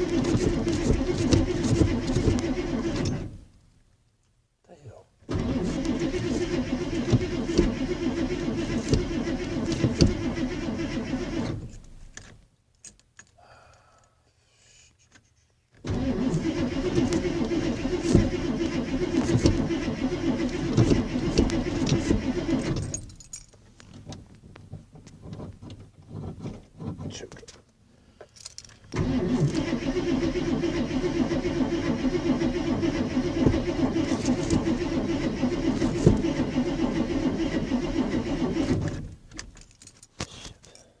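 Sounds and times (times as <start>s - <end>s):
starter cranking engine: 0.0s - 3.5s, 5.3s - 12.2s, 15.9s - 23.2s, 28.9s - 39.6s.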